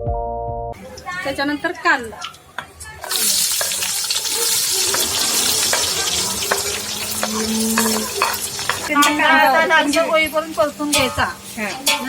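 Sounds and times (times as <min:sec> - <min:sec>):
spoon stirring in pot: 0:03.0 - 0:09.3
onion sizzling in hot oil: 0:03.0 - 0:12.0.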